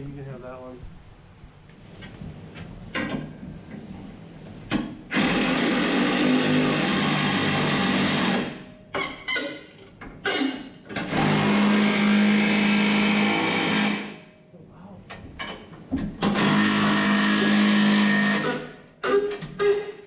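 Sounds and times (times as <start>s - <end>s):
impact wrench running: 5.1s - 8.6s, 16.3s - 19.8s.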